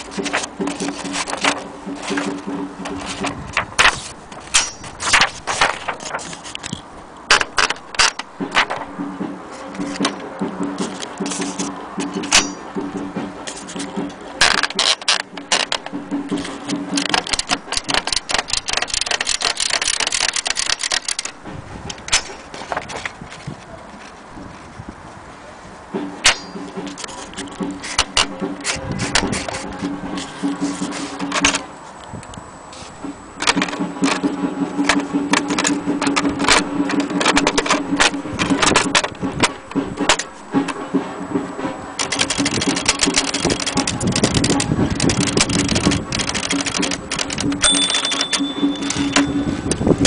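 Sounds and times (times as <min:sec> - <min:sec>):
typewriter key strikes: 0:00.0 - 0:22.9, 0:26.2 - 0:29.6, 0:33.4 - 0:40.8, 0:42.0 - 0:49.9.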